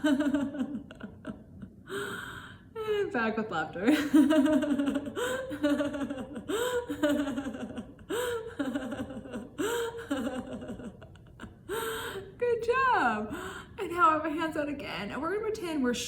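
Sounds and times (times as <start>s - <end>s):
woman laughing: 0.0s - 2.1s, 2.8s - 12.1s.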